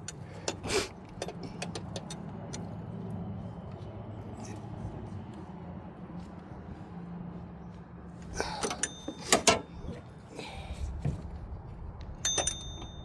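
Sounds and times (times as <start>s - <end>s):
hand tools clinking on metal: 8.4s - 9.8s, 12.2s - 13.0s.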